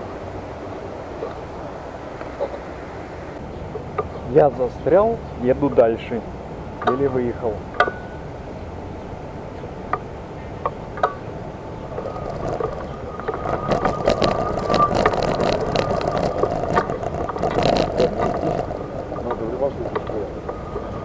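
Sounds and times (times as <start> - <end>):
wheels rolling over rough ground: 0.0 - 21.0
wheelchair motor whine: 10.9 - 21.0
scattered clicks: 11.9 - 21.0.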